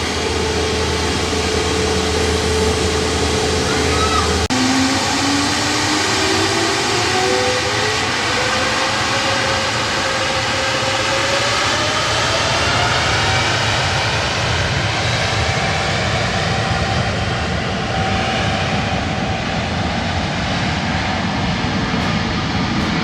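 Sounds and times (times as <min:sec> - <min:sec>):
whining engine tones: 0:00.0 - 0:14.8
jet engines roaring: 0:00.0 - 0:23.0.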